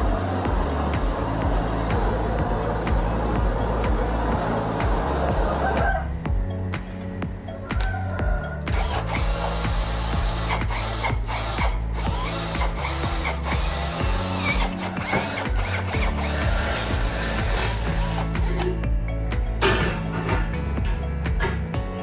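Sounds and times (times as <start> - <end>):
background music with bass: 0.0 - 22.0.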